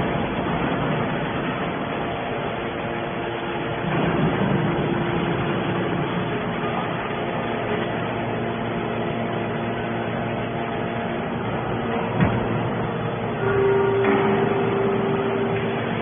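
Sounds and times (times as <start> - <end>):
loud steady whine: 0.0 - 16.0
machinery hum: 0.0 - 16.0
machine knock: 12.2 - 12.7.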